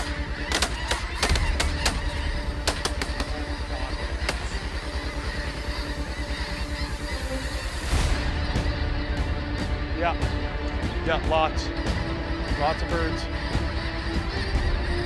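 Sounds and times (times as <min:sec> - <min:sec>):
shotgun shots: 0:00.0 - 0:05.4.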